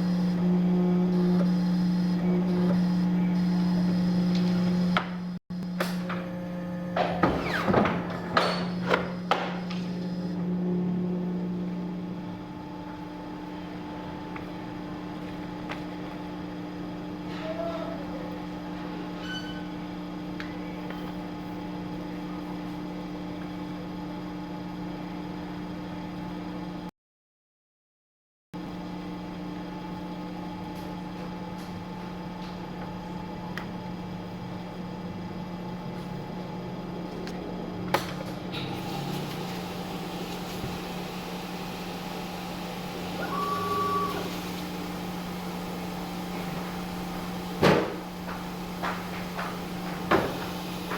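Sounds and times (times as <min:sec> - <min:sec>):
electric motor hum: 0:00.0 - 0:07.6, 0:38.8 - 0:50.9.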